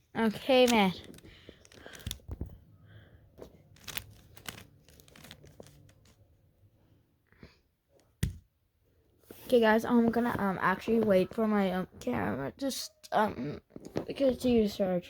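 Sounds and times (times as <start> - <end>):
puzzle cube clicks and rasps: 0.4 - 2.4, 3.7 - 6.2.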